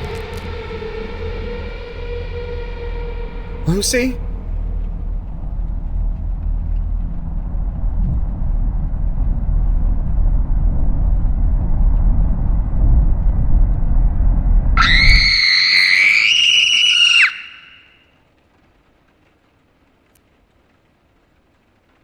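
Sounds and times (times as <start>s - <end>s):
shrill rising shriek: 0.0s - 5.7s, 14.8s - 18.0s
deep rumbling drone: 0.0s - 17.8s.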